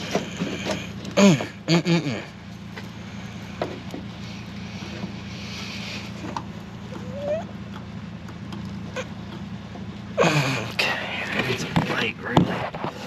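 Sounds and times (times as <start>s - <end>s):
low mechanical hum: 0.0s - 13.0s
short rising squeak: 6.9s - 7.5s.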